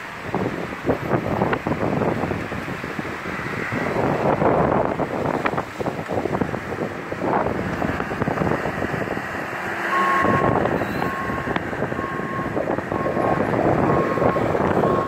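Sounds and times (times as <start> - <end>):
wind noise on microphone: 0.0 - 15.0
vehicle reversing alarm beeping: 9.8 - 15.0.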